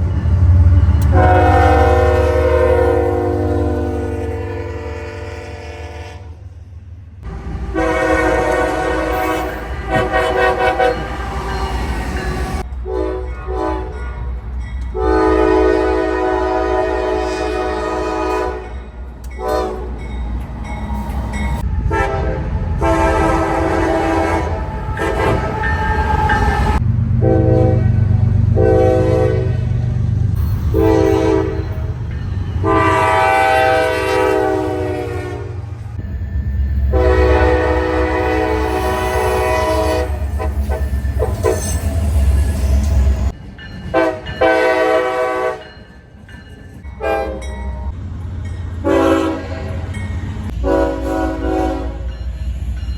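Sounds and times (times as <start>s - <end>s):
train rumbling past: 0.0s - 52.9s
locomotive air horn blasts: 1.0s - 6.4s, 7.2s - 11.8s, 12.8s - 14.0s, 15.0s - 18.7s, 19.4s - 20.0s, 21.6s - 27.9s, 28.6s - 29.6s, 30.7s - 31.9s, 32.6s - 35.6s, 36.9s - 41.8s, 43.9s - 45.7s, 47.0s - 47.5s, 48.8s - 49.9s, 50.5s - 52.1s.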